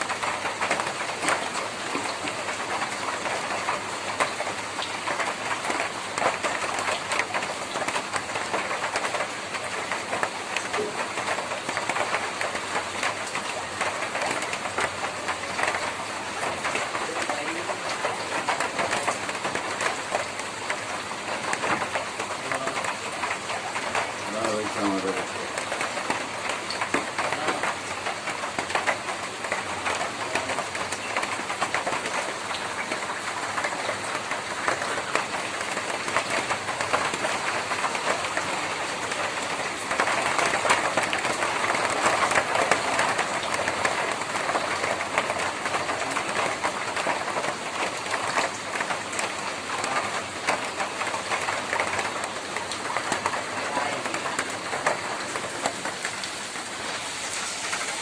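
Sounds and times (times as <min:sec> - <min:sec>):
rain on a tin roof: 0:00.0 - 0:58.0.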